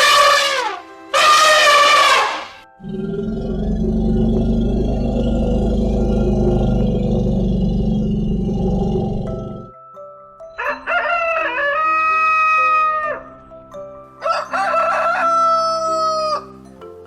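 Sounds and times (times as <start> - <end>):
animal growling: 2.8 - 9.8
rooster crowing: 10.6 - 13.3, 14.2 - 16.5.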